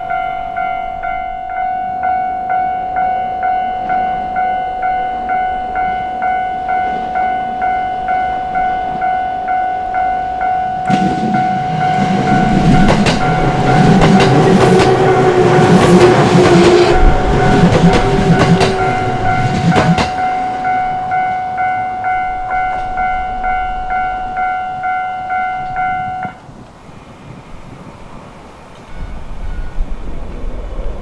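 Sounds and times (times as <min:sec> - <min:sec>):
crossing warning bell ringing: 0:00.0 - 0:27.1, 0:28.8 - 0:30.1
train wheels clacking on rails: 0:10.8 - 0:26.7.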